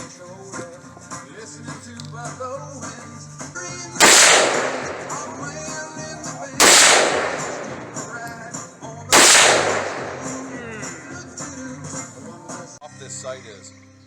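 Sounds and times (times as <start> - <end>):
rifle shots with echo: 4.0 - 6.0, 6.6 - 8.5, 9.1 - 10.6.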